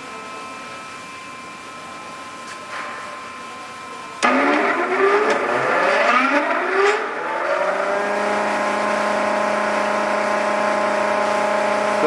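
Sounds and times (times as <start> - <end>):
disc sander motor whining: 4.2 - 8.6.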